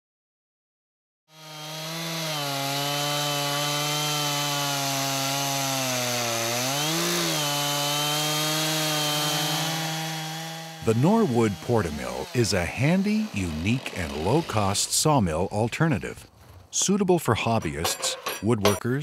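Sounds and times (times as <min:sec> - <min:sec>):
chainsaw milling a log: 0:01.3 - 0:15.9.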